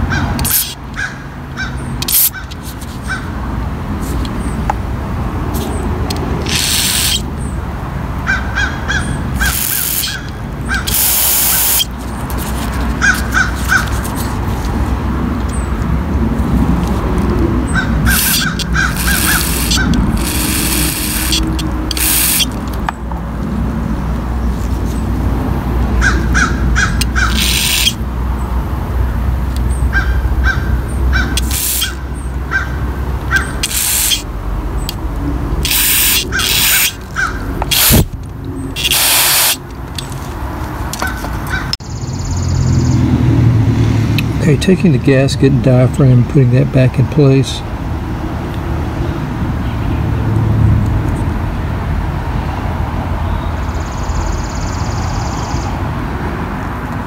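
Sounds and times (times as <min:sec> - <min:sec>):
crows cawing: 0:00.0 - 0:03.4, 0:08.2 - 0:11.0, 0:13.0 - 0:13.9, 0:17.7 - 0:20.0, 0:26.0 - 0:27.4, 0:29.9 - 0:33.6, 0:36.3 - 0:37.5, 0:41.0 - 0:41.8
loud hissing bursts: 0:00.4 - 0:00.8, 0:06.4 - 0:07.3, 0:09.4 - 0:10.2, 0:10.8 - 0:11.9, 0:18.0 - 0:22.6, 0:27.0 - 0:28.0, 0:31.4 - 0:32.0, 0:33.6 - 0:34.3, 0:35.6 - 0:38.1, 0:38.8 - 0:39.6.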